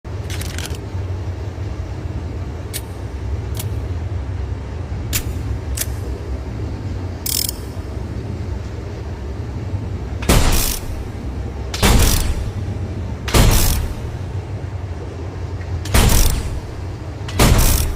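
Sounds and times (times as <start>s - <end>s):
steady low rumble: 0.0s - 17.9s
revolver gunshots: 10.2s - 11.1s, 11.8s - 12.7s, 13.3s - 14.3s, 15.9s - 17.9s.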